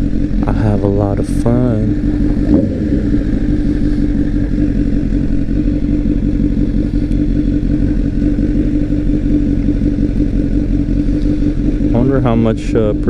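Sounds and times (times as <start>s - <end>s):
motorcycle engine cruising: 0.0s - 13.0s
riding wind rush: 1.3s - 5.9s.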